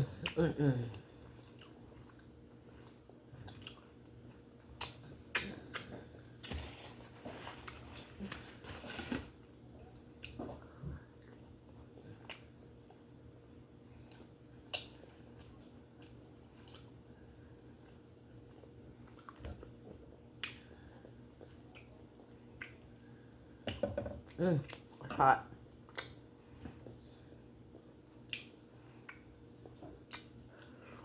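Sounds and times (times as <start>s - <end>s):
faint steady hum: 0.0s - 31.0s
close-up chewing: 1.0s - 6.5s, 9.8s - 23.0s, 25.7s - 31.0s.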